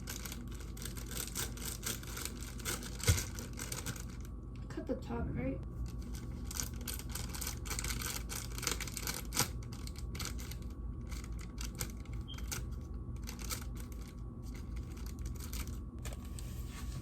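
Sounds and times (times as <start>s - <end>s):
packaging crinkling and tearing: 0.0s - 4.3s.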